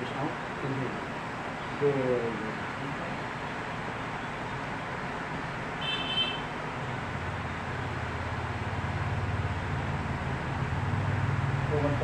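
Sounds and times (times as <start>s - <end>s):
steady background hiss: 0.0s - 12.0s.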